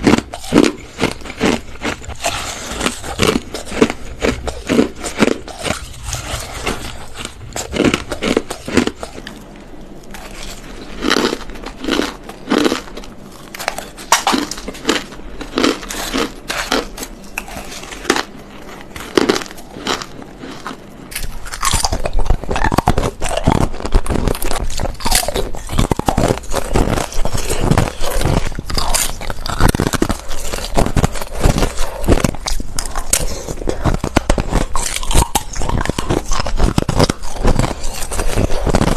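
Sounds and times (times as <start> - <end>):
crushed ice crunching: 0.0 - 9.2, 10.1 - 38.9.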